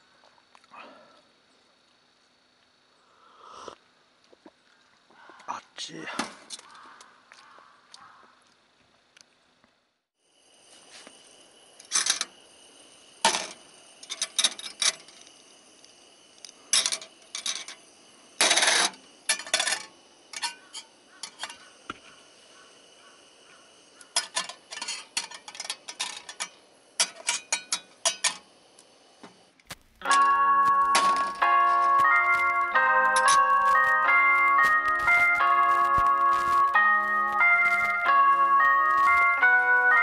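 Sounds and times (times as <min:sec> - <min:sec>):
faint high whine: 0:10.2 - 0:40.0.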